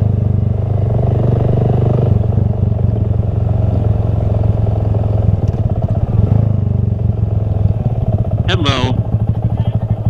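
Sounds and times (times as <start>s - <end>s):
motorcycle engine idling: 2.2s - 10.0s.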